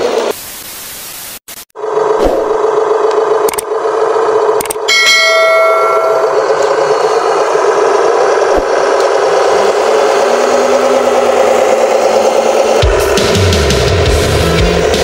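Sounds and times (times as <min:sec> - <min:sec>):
bell-like ringing tone: 0:04.9 - 0:07.1
toy truck motor running: 0:06.0 - 0:13.9.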